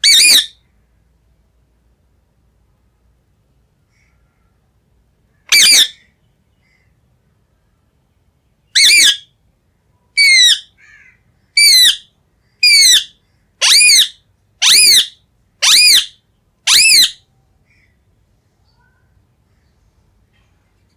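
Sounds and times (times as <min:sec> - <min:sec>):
parrot squawking: 0:00.0 - 0:00.6, 0:05.5 - 0:06.1, 0:08.8 - 0:09.3, 0:10.2 - 0:11.0, 0:11.6 - 0:17.2.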